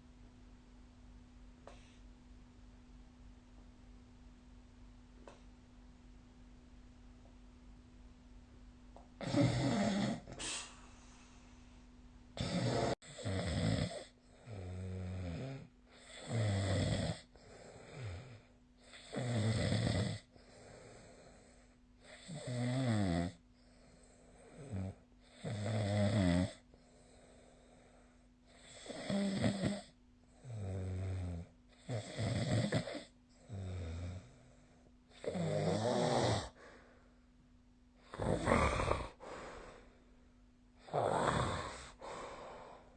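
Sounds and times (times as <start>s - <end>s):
faint steady hum: 0.0s - 42.9s
person snoring: 9.2s - 10.8s, 12.4s - 23.4s, 24.0s - 26.6s, 28.5s - 34.5s, 35.1s - 36.8s, 38.0s - 39.9s, 40.8s - 42.9s.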